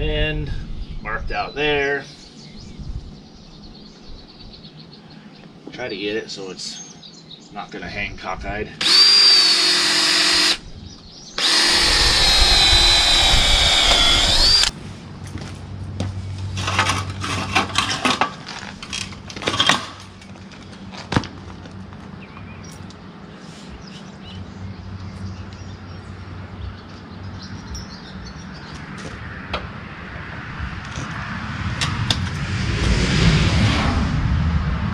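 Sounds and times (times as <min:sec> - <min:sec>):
power drill whining: 0:08.8 - 0:10.6, 0:11.4 - 0:14.7
knocks and clatter of parts: 0:16.6 - 0:22.1.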